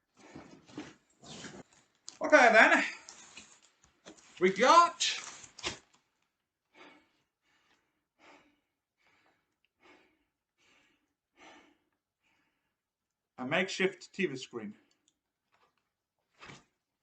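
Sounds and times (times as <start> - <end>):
man breathing heavily: 6.6 - 12.8.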